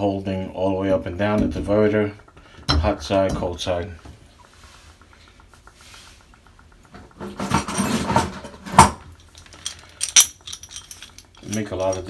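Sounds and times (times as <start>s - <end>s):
faint ticking: 1.2s - 7.2s
metal hand tools rattling: 9.1s - 12.0s.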